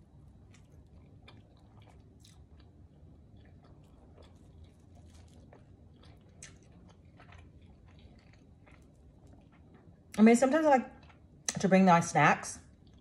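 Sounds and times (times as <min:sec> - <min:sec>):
chewing and biting pizza: 0:00.0 - 0:10.0, 0:12.7 - 0:13.0.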